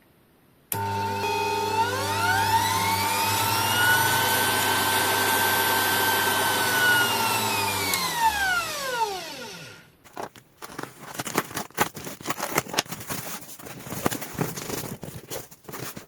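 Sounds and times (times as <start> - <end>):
bench grinder motor whining: 0.8 - 9.9.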